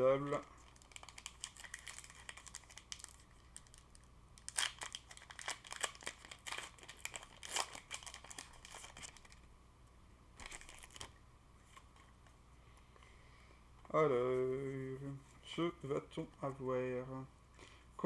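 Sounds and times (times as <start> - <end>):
foil wrapper crinkling and tearing: 0.2 - 9.5, 10.4 - 11.1.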